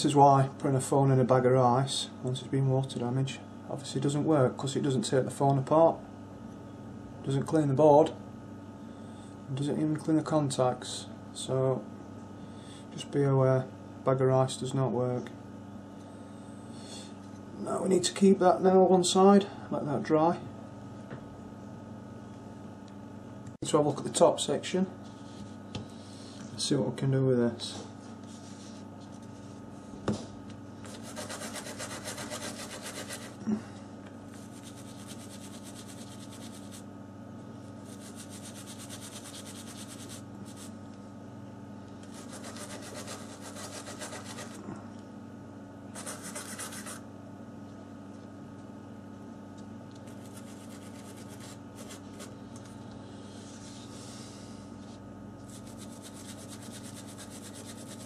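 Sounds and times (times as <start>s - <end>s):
steady low hum: 0.0s - 58.0s
scrubbing on a circuit board: 30.9s - 33.4s, 34.3s - 36.9s, 37.8s - 40.7s, 42.1s - 44.6s, 50.0s - 52.3s, 55.5s - 58.0s.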